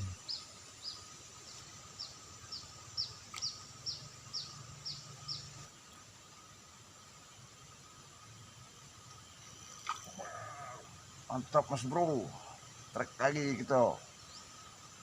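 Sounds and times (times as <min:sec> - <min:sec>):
bird chirping: 0:00.0 - 0:05.7, 0:09.2 - 0:15.0
faint high-pitched hum: 0:00.0 - 0:15.0.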